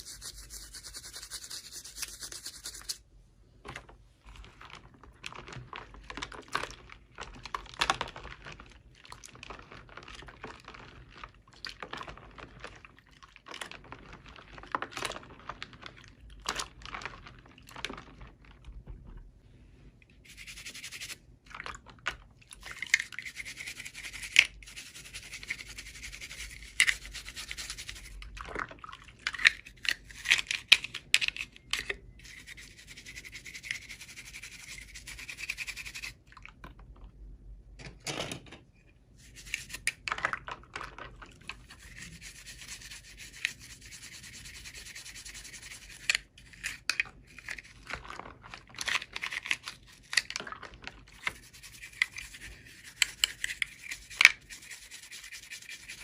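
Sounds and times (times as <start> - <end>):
hands rubbing toy packaging: 0.0 - 3.0, 20.2 - 21.2, 22.6 - 28.3, 32.2 - 36.1, 39.2 - 40.0, 41.5 - 50.4, 51.0 - 56.0.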